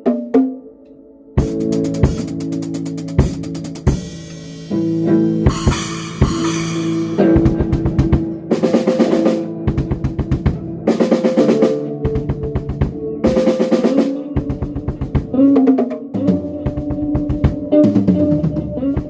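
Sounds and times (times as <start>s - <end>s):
held guitar chords: 0.0s - 19.0s
rapid drum kit hits: 1.4s - 4.8s, 5.4s - 15.5s
cymbal crashes: 1.4s - 9.5s.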